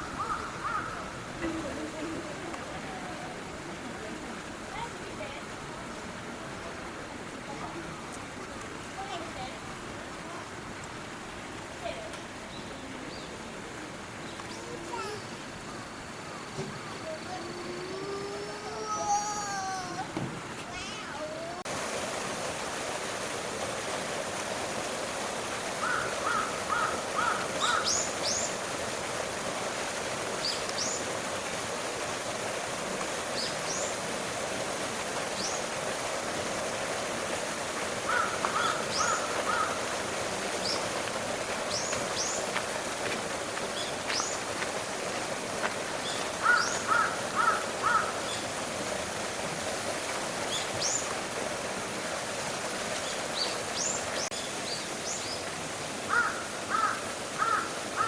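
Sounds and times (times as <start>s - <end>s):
birds calling: 0.0s - 1.3s, 25.7s - 28.6s, 38.1s - 41.0s, 46.0s - 48.5s, 56.1s - 58.0s.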